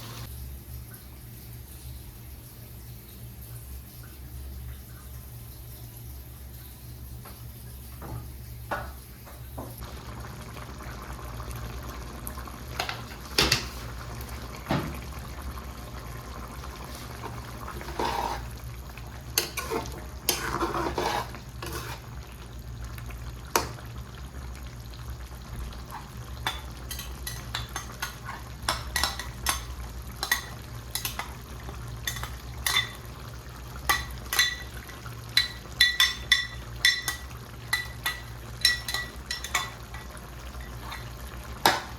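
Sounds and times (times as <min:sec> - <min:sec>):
food frying: 0:00.0 - 0:41.9
metal spoon clinking on pan: 0:32.0 - 0:33.0, 0:33.9 - 0:34.7, 0:35.4 - 0:40.0.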